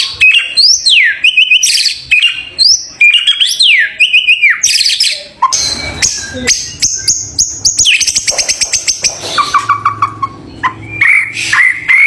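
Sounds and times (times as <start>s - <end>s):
bird singing whistled notes: 0.2s - 9.0s, 10.7s - 12.0s
bird stuttering chips: 5.5s - 12.0s.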